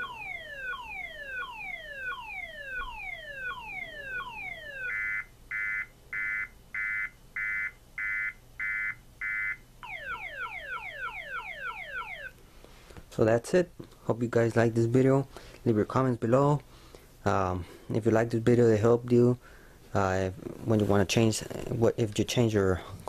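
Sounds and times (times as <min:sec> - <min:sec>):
car alarm siren: 0:00.0 - 0:12.4.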